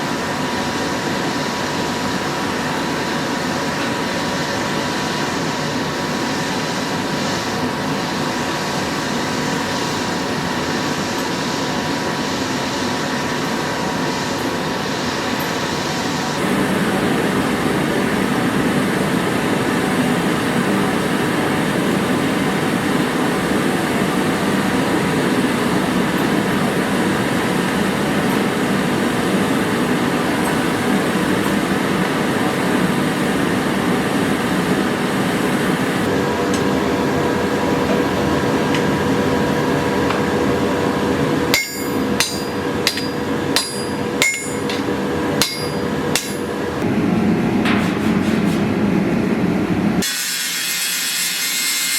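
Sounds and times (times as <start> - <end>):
steady rushing noise: 16.3 - 36.3
hammer blows on anvil: 41.5 - 46.5.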